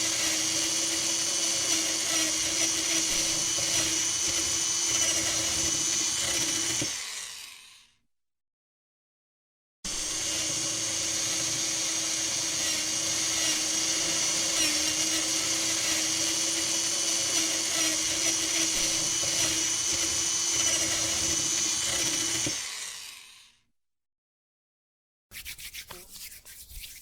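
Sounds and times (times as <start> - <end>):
electric motor whining: 9.9 - 23.4.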